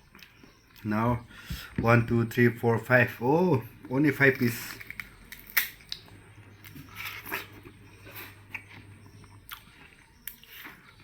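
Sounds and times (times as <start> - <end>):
person chewing watermelon: 0.0 - 0.9, 4.3 - 11.0.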